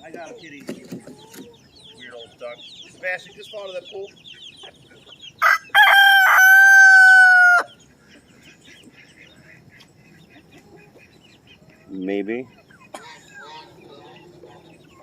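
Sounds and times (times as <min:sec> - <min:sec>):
faint chickens clucking: 0:00.0 - 0:15.0
rooster crowing: 0:05.4 - 0:07.7.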